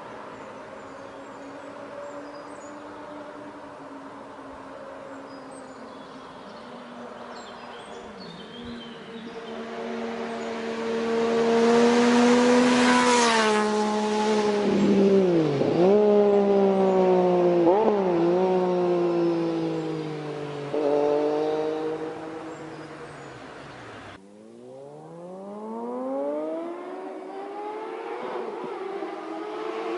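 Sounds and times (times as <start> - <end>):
motorcycle engine passing: 7.9 - 29.9.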